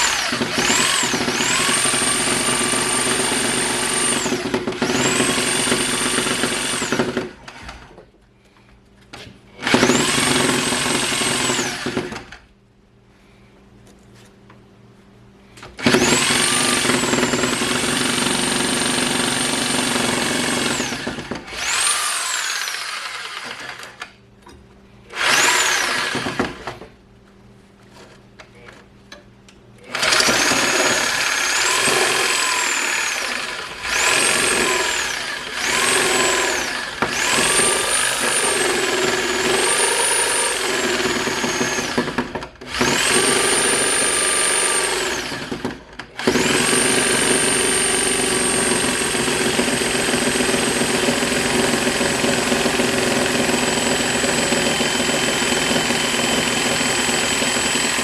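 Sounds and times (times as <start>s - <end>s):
power saw cutting wood: 0.0s - 7.0s, 15.9s - 24.0s, 25.2s - 26.8s, 30.0s - 42.1s.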